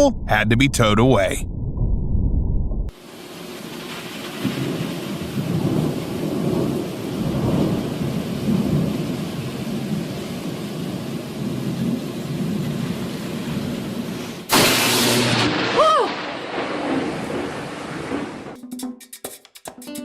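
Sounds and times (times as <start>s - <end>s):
thunder rumbling: 0.0s - 3.0s, 3.6s - 18.6s
rain hissing: 2.9s - 18.6s.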